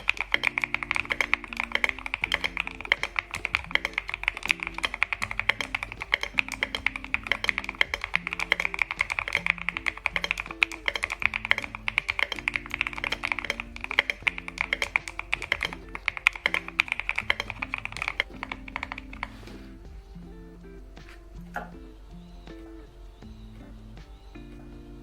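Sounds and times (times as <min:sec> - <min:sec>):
fast typing on mechanical keyboard: 0:00.0 - 0:19.4
background music: 0:00.0 - 0:25.0.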